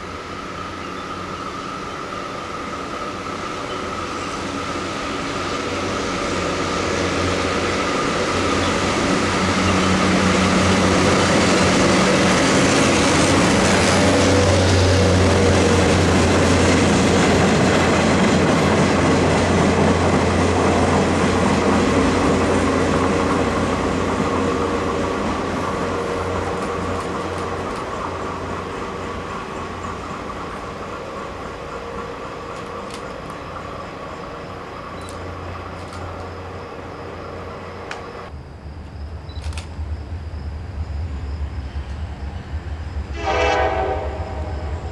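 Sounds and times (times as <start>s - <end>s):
rail noise: 0.0s - 44.9s
train passing: 0.0s - 44.9s.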